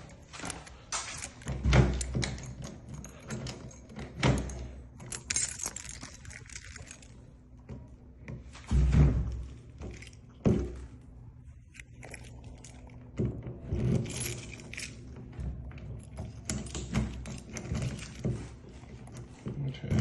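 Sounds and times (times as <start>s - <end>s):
metal keys jangling: 0.0s - 7.3s, 11.7s - 13.0s, 13.8s - 15.2s, 15.8s - 18.5s
lock cylinders clicking and knocking: 0.4s - 8.4s.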